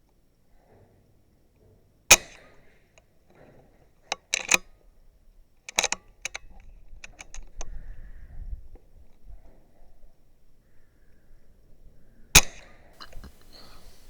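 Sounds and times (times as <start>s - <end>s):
sharp metallic clicks: 2.1s - 2.5s, 4.1s - 4.7s, 5.7s - 7.7s
air rifle shot: 12.4s - 12.8s.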